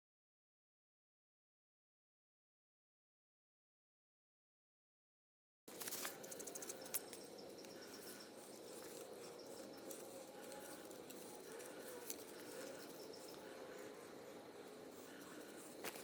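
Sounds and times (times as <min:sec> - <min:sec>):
low steady hum: 0:05.7 - 0:16.0
light clicks and ticks: 0:05.8 - 0:13.9.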